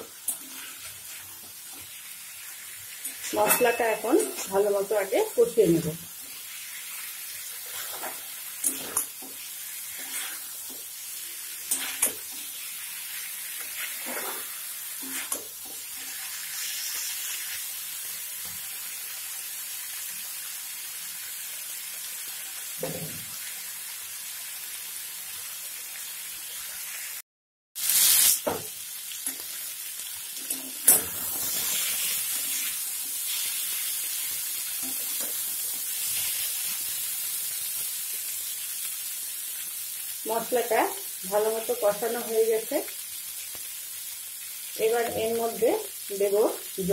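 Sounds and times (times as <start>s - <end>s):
food sizzling in hot oil: 0.0s - 27.2s, 27.8s - 46.9s
spatula scraping pan: 7.6s - 10.8s, 13.6s - 16.4s.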